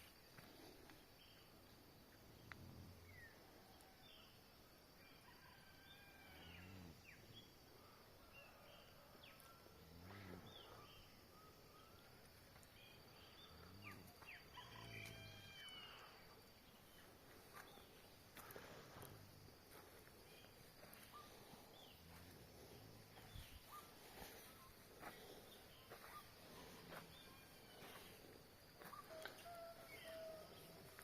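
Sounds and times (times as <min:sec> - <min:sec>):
faint birds chirping: 0:00.0 - 0:31.0.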